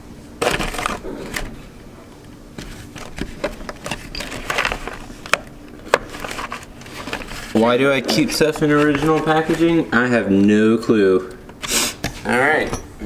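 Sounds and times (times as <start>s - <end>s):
packaging rustling: 0.4s - 1.6s, 2.6s - 10.2s.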